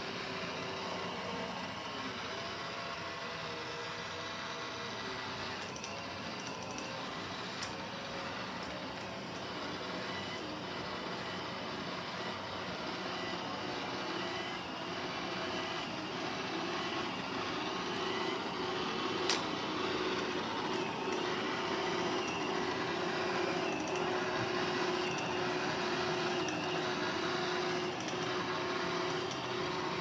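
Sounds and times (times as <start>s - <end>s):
robot vacuum whirring hum: 0.0s - 30.0s
sharp click: 19.3s - 19.6s.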